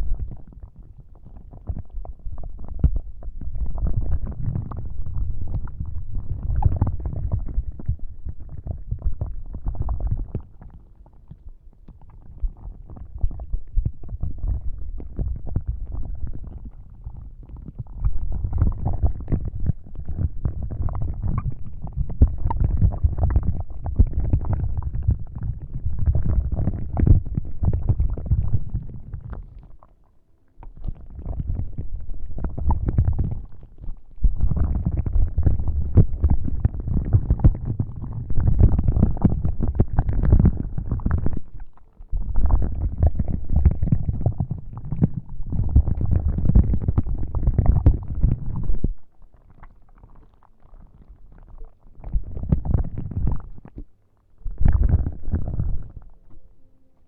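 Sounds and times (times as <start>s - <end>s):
scratching against microphone: 0.0s - 29.9s, 30.6s - 56.4s.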